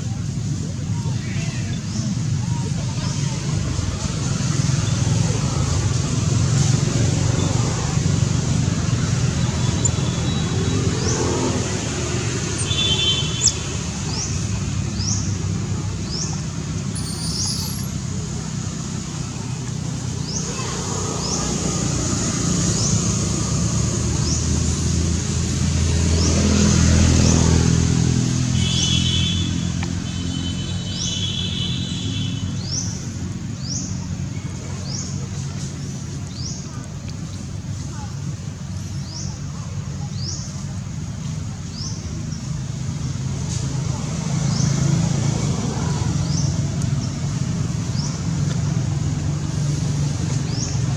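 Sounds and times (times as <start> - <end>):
short high rising chirps: 17.0 - 17.9.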